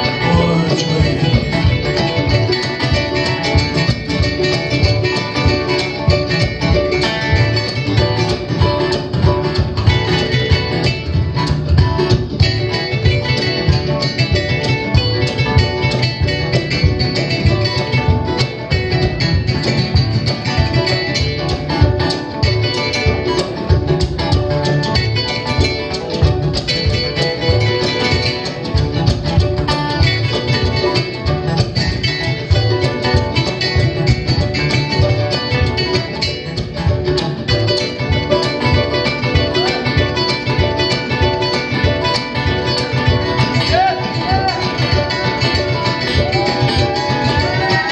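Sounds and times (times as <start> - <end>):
acoustic band plucked strings: 0.0 - 47.9.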